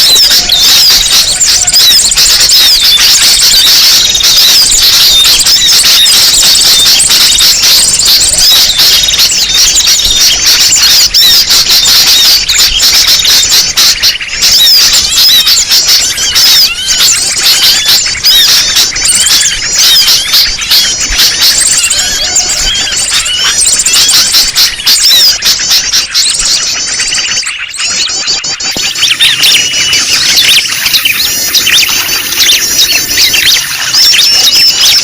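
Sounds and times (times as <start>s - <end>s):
flock of small birds chirping: 0.0s - 35.0s.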